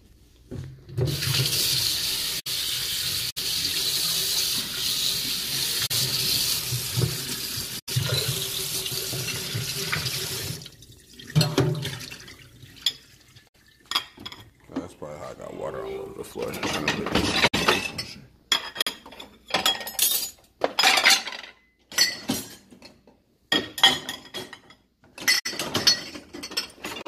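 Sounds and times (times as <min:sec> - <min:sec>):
tap water running: 0:00.9 - 0:14.8.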